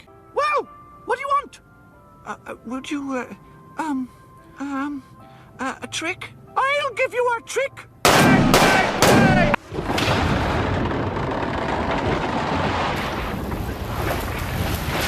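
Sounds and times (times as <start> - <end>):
gunfire sound effects: 8.1 - 9.6
explosion rumble: 8.1 - 15.0.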